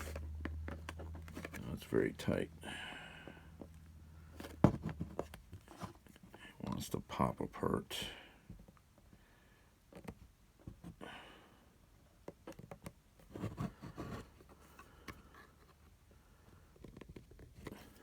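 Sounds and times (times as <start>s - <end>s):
plastic case clicks and handling: 0.0s - 1.6s.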